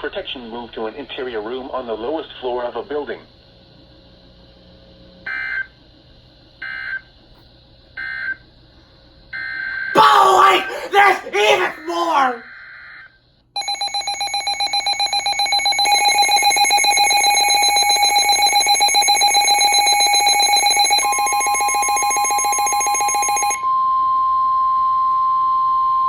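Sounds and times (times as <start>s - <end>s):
pulsing electronic alarm tone: 13.6s - 23.6s
steady single-pitch warning tone: 13.6s - 24.0s.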